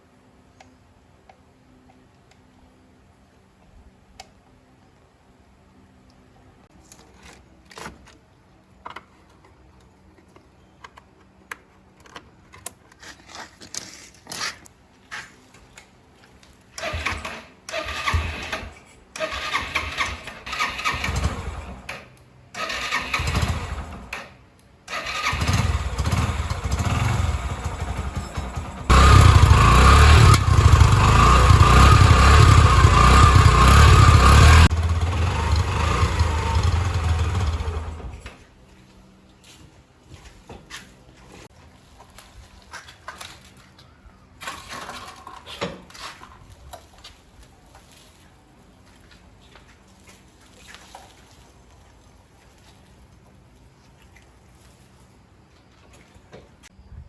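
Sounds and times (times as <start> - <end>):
motorcycle engine starting and revving: 16.8 - 38.4.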